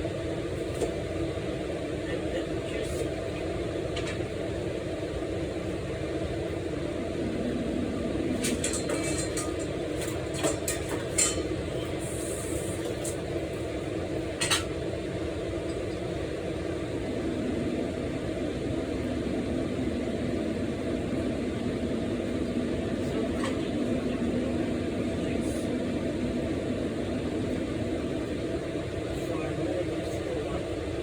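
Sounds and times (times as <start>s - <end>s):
steady low hum: 0.0s - 31.0s
dishes and utensils clinking: 8.4s - 9.5s.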